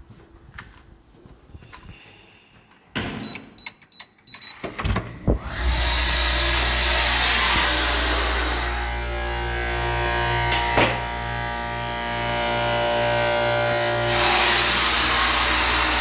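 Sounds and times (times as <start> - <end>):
elevator motor humming: 5.3 - 16.0.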